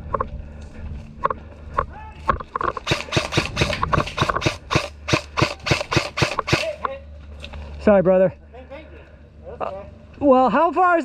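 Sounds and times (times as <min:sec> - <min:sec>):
scattered knocks: 0:02.3 - 0:06.6.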